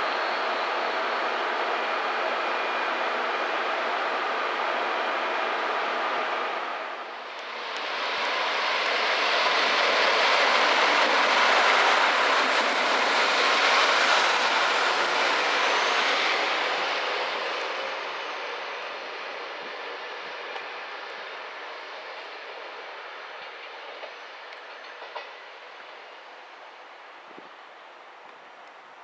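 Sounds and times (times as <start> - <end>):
diesel train pulling out: 7.1 - 26.4.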